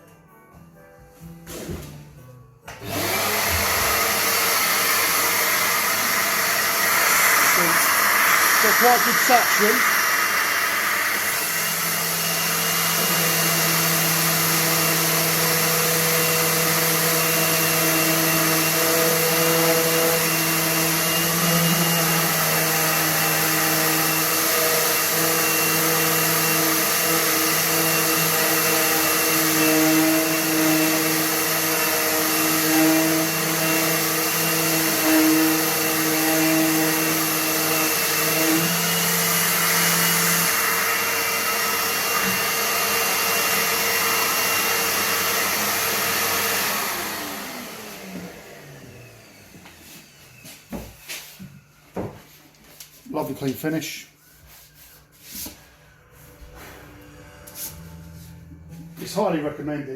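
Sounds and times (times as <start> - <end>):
dust extractor running: 2.7 - 50.6
orbital sander running: 2.8 - 50.0.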